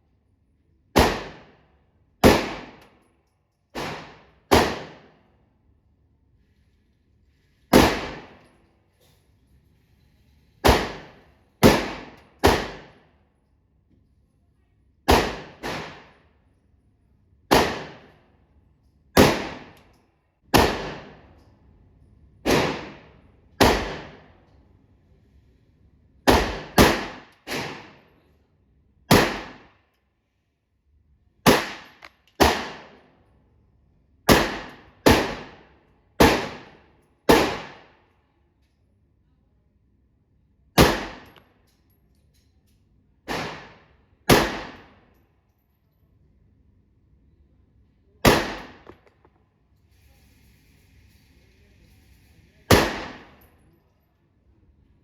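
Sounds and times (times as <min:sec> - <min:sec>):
pistol shots: 0:01.0 - 0:01.6, 0:02.2 - 0:02.9, 0:03.8 - 0:05.2, 0:07.7 - 0:08.4, 0:10.6 - 0:13.0, 0:15.1 - 0:16.2, 0:17.5 - 0:18.2, 0:19.2 - 0:19.9, 0:20.5 - 0:21.3, 0:22.4 - 0:24.4, 0:26.3 - 0:28.1, 0:29.1 - 0:29.7, 0:31.4 - 0:33.1, 0:34.3 - 0:38.0, 0:40.8 - 0:41.4, 0:43.3 - 0:45.0, 0:48.2 - 0:49.0, 0:52.7 - 0:53.5.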